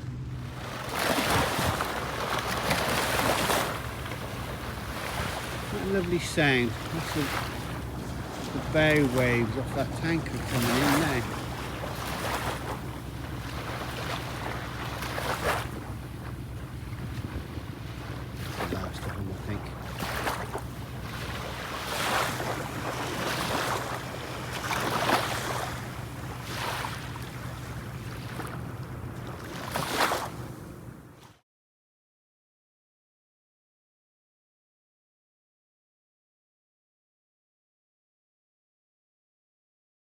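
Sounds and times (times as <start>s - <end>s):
waves breaking on shore: 0.0s - 31.4s
steady low drone: 3.8s - 19.8s.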